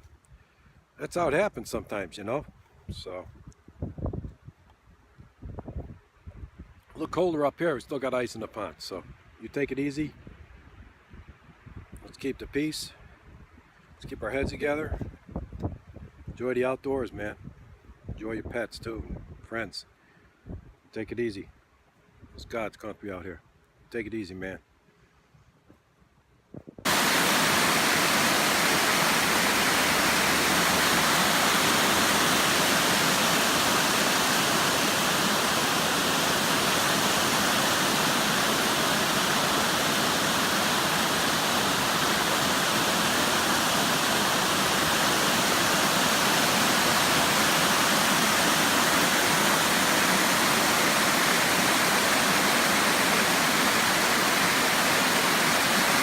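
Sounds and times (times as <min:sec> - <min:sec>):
waterfall rushing: 0:26.9 - 0:56.0.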